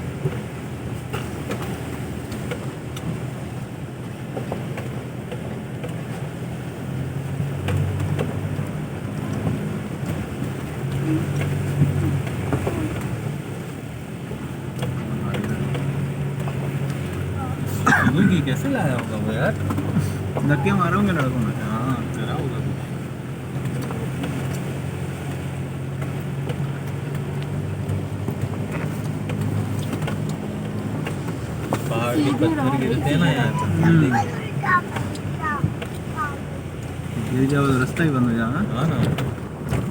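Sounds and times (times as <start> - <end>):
diesel engine hum: 0.0 - 39.9
vehicle rattles and clicks: 0.0 - 39.9
body knocks and rattles: 23.5 - 36.2.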